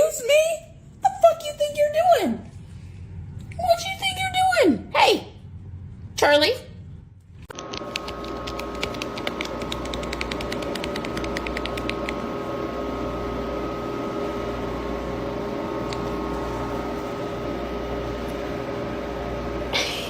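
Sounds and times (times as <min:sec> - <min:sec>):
machine hum: 0:05.3 - 0:20.0
rapid clicks: 0:07.5 - 0:12.2.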